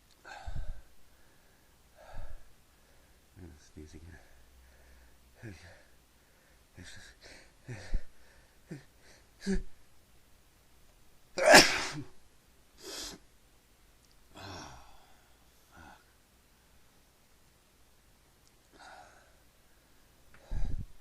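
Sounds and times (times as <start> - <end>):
man sneezing: 11.4 - 12.1.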